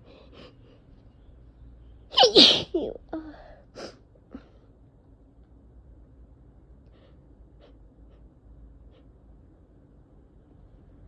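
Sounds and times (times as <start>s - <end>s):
person sneezing: 2.2s - 2.9s.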